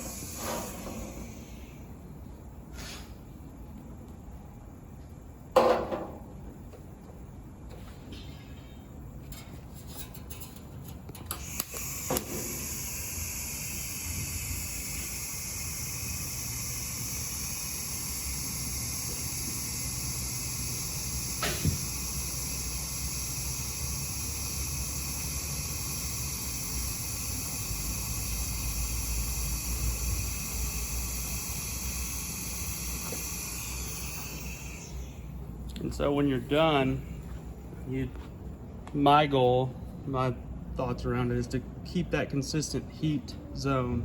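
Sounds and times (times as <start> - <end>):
welding arc hissing and humming: 0.0 - 2.0, 9.3 - 37.0
welding arc striking clicks: 9.3 - 35.0.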